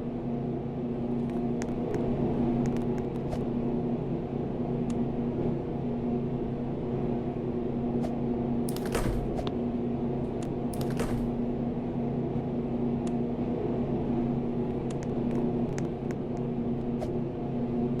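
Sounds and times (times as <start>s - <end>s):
ceiling fan motor hum: 0.0s - 18.0s.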